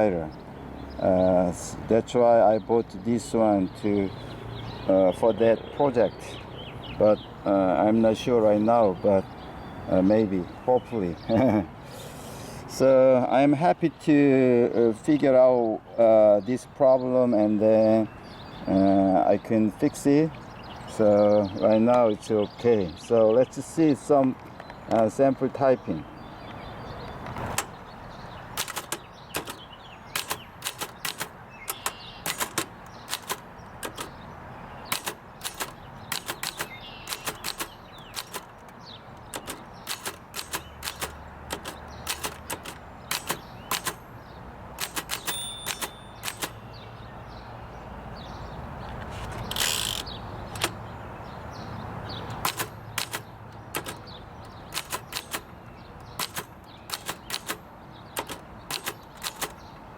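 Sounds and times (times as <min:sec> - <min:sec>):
typewriter carriage sliding rasp: 0:28.6 - 0:34.2, 0:34.9 - 0:44.0, 0:44.8 - 0:46.6, 0:49.1 - 0:50.8, 0:52.3 - 0:57.6, 0:58.2 - 0:59.6
typewriter keys clicking: 0:28.6 - 0:34.2, 0:34.9 - 0:44.0, 0:44.8 - 0:46.6, 0:52.3 - 0:59.6
typewriter bell ring: 0:39.4 - 0:44.0, 0:44.8 - 0:46.7, 0:54.7 - 0:55.5.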